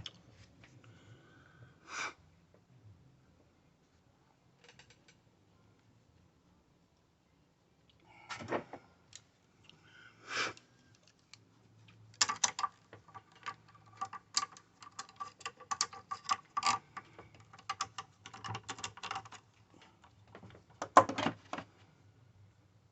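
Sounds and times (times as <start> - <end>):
hard objects clicking and clattering: 12.1 - 21.7.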